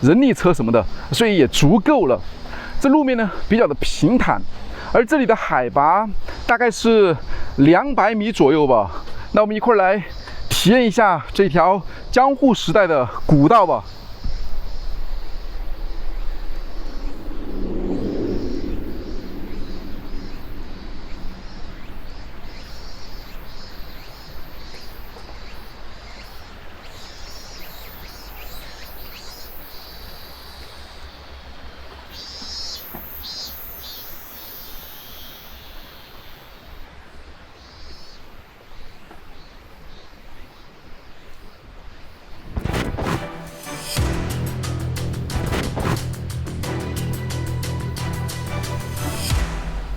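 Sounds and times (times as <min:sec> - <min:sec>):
low wind rumble: 0:00.0 - 0:25.1
birds and insects chirping: 0:00.0 - 0:45.3
low rumble: 0:14.8 - 0:23.2.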